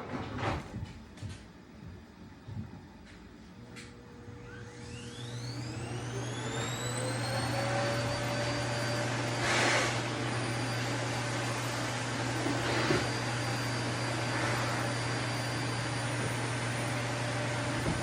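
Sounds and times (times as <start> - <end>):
vacuum cleaner running: 3.6 - 18.0.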